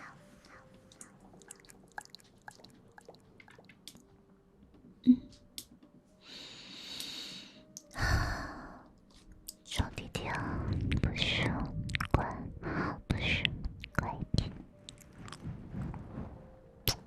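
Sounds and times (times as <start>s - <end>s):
breathy hiss: 6.2s - 8.8s
soft wet mouth clicks: 10.9s - 12.4s.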